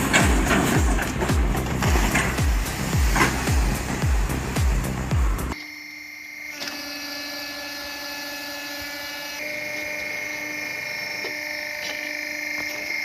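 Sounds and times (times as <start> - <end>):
machine motor whining: 5.0 - 13.0.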